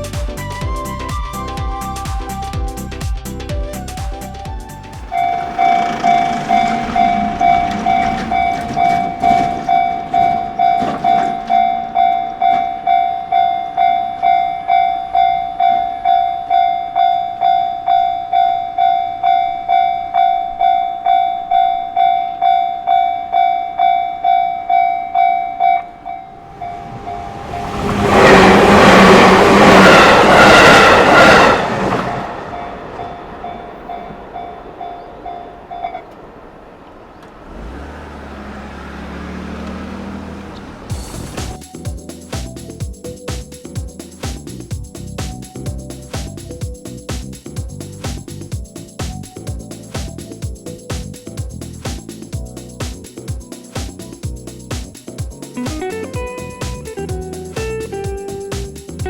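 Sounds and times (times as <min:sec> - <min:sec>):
loud rushing of passing train: 0:03.8 - 0:24.6, 0:25.8 - 0:41.8
level-crossing warning bell ringing: 0:05.1 - 0:36.2
train wheels clattering over rail joints: 0:05.2 - 0:14.4.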